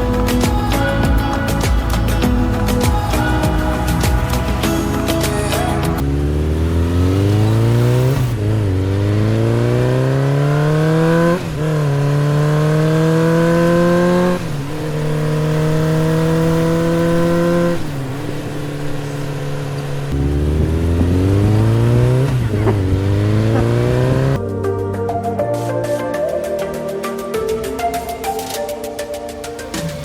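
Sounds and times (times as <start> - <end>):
vehicle engine accelerating: 1.8 - 24.8.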